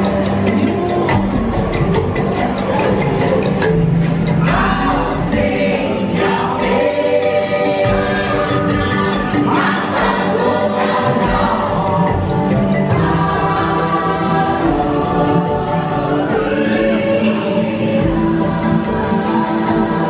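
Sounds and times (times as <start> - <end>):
choir singing long notes: 4.3 - 20.0.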